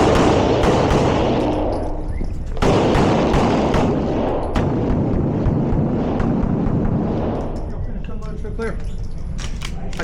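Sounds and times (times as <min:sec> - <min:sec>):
pistol shots: 0:00.0 - 0:07.6.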